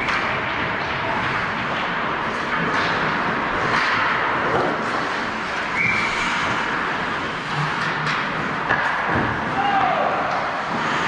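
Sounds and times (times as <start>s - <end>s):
skates scraping on ice: 0.0s - 11.0s
sticks and puck clacking: 0.0s - 11.0s.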